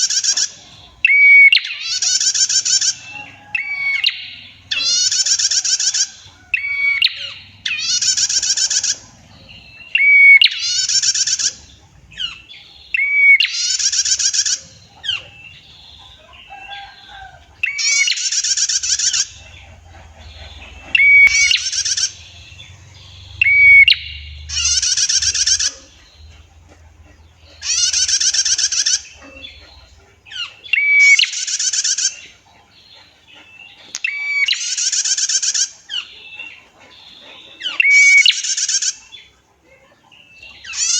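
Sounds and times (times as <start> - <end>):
bird buzzy trilled call: 0.0 - 9.1, 9.8 - 17.0, 20.2 - 26.0, 27.6 - 29.2.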